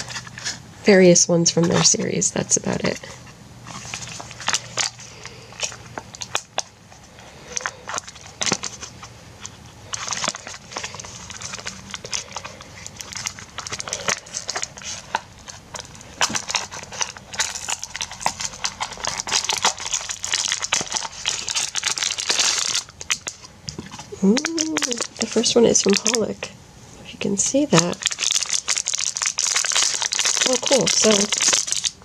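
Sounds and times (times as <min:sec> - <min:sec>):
packaging crinkling and rustling: 0:00.0 - 0:00.7, 0:01.5 - 0:26.4, 0:27.7 - 0:32.0
sharp clicks and crackles: 0:03.7 - 0:06.8, 0:07.5 - 0:26.2, 0:27.8 - 0:32.0.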